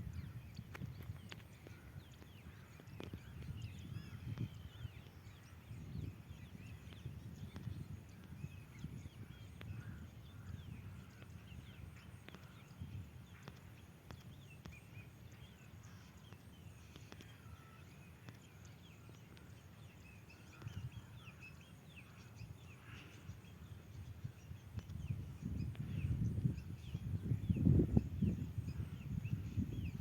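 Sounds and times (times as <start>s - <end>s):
wind rumble on microphone: 0.0s - 30.0s.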